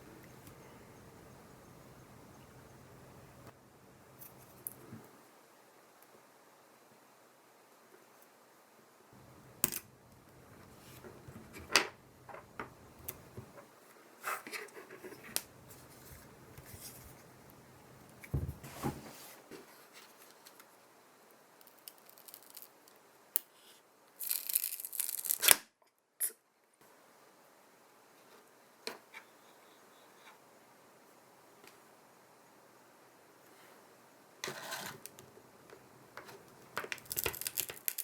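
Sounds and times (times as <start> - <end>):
rustling: 13.1 - 20.7, 36.2 - 38.0.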